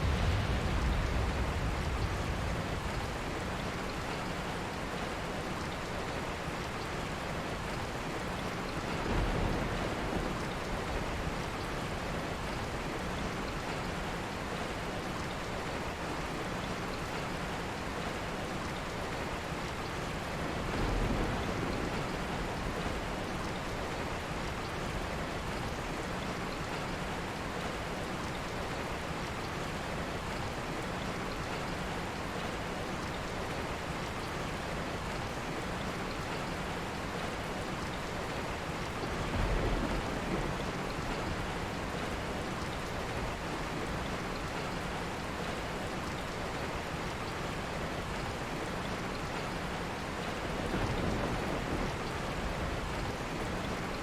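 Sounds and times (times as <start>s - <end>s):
low rumble: 0.0s - 3.8s
steady rain hiss: 0.0s - 54.0s.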